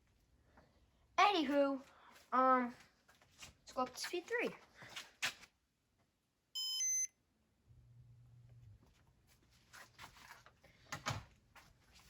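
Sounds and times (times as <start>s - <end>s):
fan control two-tone beep: 6.6s - 7.2s.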